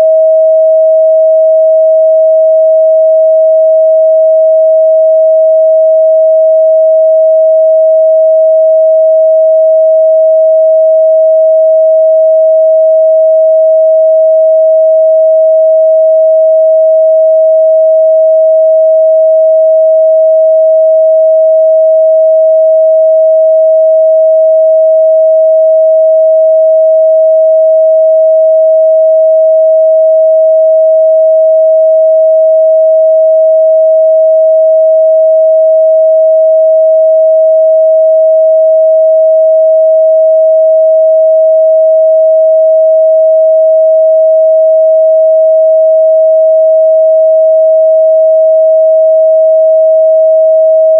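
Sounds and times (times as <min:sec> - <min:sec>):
steady sine-wave test tone: 0:00.0 - 0:50.9.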